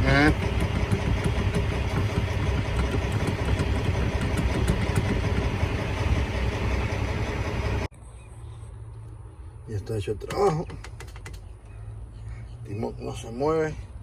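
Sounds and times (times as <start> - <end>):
truck diesel engine idling: 0.0 - 7.9.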